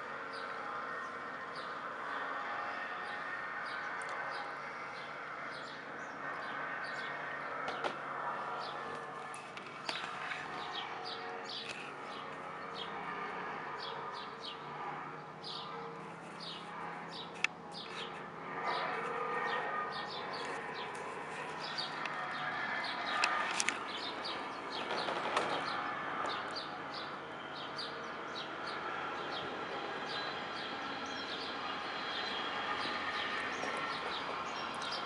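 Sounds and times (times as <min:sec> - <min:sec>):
droning hum in the air: 0:00.0 - 0:35.0
birds chirping: 0:00.2 - 0:35.0.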